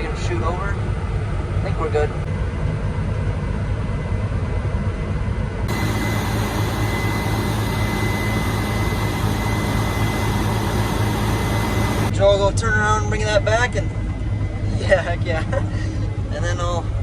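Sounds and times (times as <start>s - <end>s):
high whine: 5.6s - 15.6s
combine harvester running: 5.6s - 16.3s.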